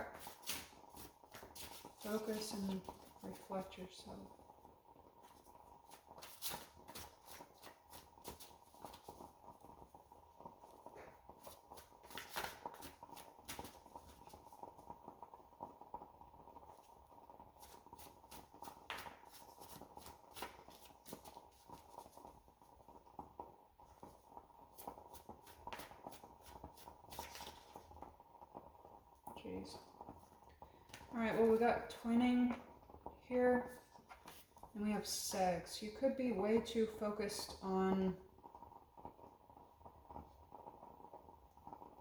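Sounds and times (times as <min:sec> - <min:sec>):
cards shuffling: 0:12.1 - 0:13.8, 0:27.1 - 0:27.7.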